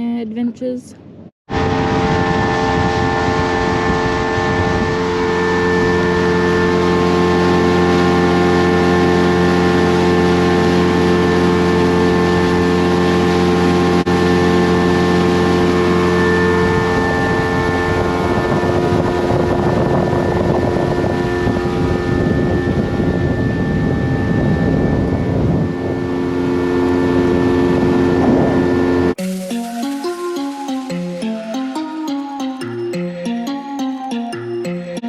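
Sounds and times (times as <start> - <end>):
water and wind rushing: 1.5 - 23.1
outboard motor droning: 1.5 - 30.7.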